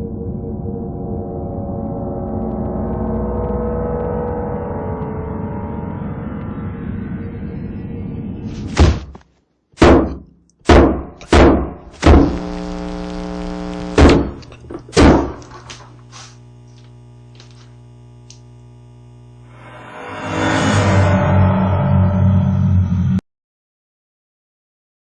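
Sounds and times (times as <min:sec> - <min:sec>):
droning tone: 0:00.0 - 0:08.5, 0:11.8 - 0:23.2.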